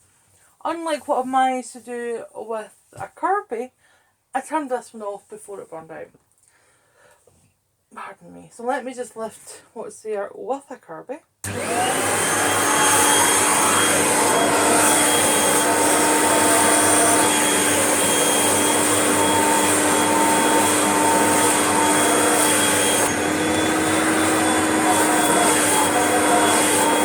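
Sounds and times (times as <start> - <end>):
vacuum cleaner motor whine: 11.4 - 27.0.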